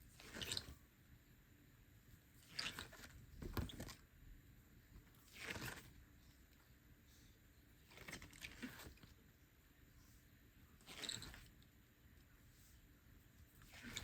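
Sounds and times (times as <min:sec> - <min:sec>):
book pages turning: 0:02.4 - 0:04.0, 0:05.2 - 0:06.0, 0:07.9 - 0:09.2, 0:10.8 - 0:11.5, 0:13.6 - 0:14.0.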